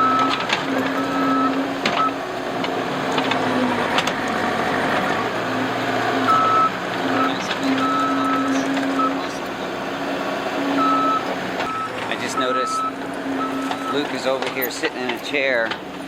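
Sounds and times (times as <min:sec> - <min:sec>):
reversing alarm beeping: 0:00.0 - 0:02.2, 0:06.2 - 0:09.6, 0:10.7 - 0:14.8
diesel engine under load: 0:00.0 - 0:16.0.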